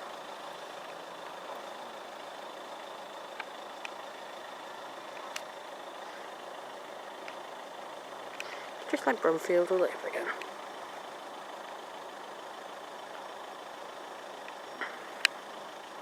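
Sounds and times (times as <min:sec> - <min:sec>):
faint clicks: 0:05.1 - 0:06.2, 0:07.2 - 0:07.4, 0:08.3 - 0:08.9.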